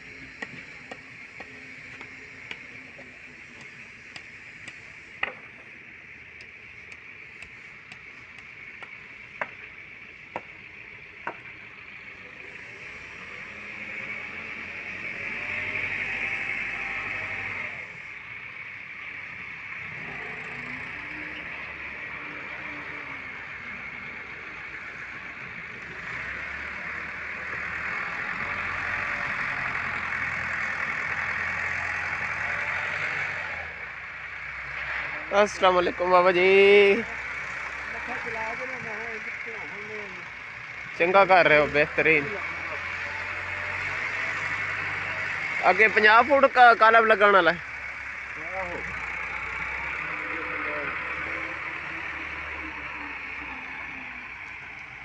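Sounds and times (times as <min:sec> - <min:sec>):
engine running: 0:00.0 - 0:55.0
sharp taps: 0:03.6 - 0:05.4.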